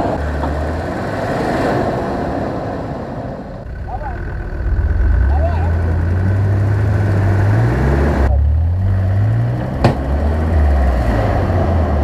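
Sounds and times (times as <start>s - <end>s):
engine rumbling and revving: 0.0s - 12.0s
sharp knock: 9.8s - 10.1s.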